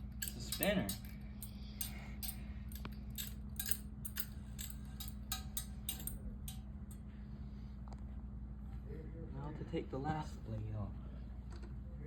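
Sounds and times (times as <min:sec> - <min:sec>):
fan ticking: 0:00.0 - 0:07.1
ceiling fan motor hum: 0:00.0 - 0:12.0.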